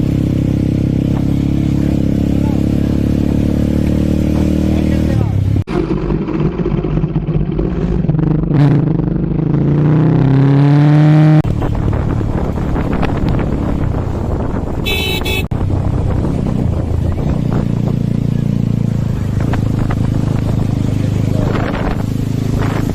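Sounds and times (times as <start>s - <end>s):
motorcycle engine revving: 0.0s - 22.9s.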